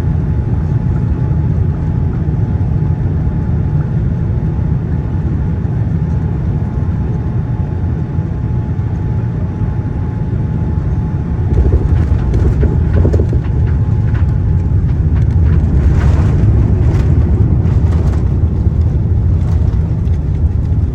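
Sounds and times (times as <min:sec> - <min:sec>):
airliner landing rumble: 0:00.0 - 0:20.9
knocks and rattles: 0:11.5 - 0:20.9.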